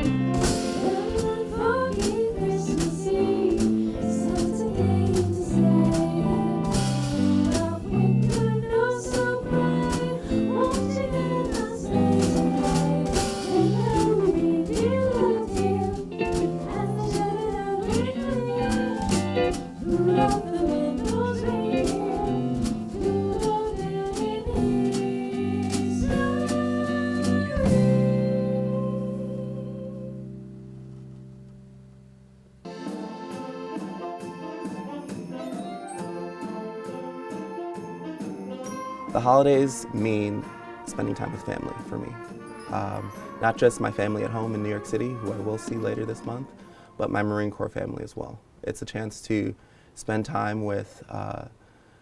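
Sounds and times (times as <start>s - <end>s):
drums: 0.0s - 29.7s, 32.5s - 46.8s
electric guitar melody: 0.0s - 31.7s
bass guitar line: 0.0s - 32.7s.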